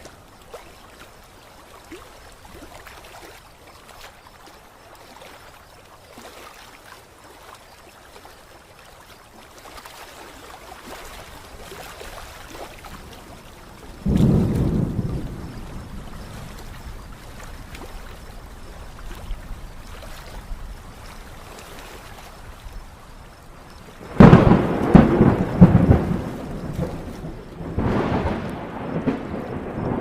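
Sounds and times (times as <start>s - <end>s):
thunder rumbling: 13.9s - 17.2s, 24.0s - 30.0s.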